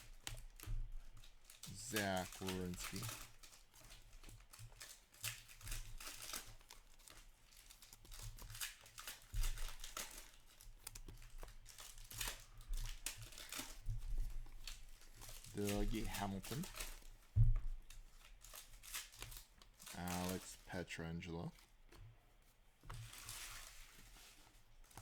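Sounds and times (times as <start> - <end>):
foil wrappers crinkling and tearing: 0.0 - 25.0.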